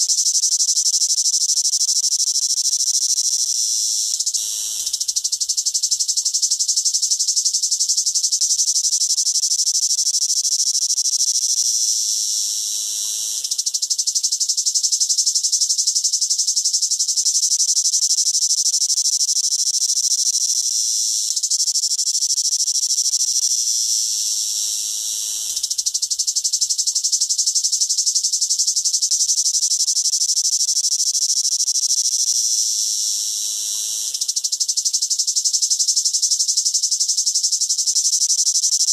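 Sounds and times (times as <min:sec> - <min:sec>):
cicada buzzing: 0:00.0 - 0:38.9.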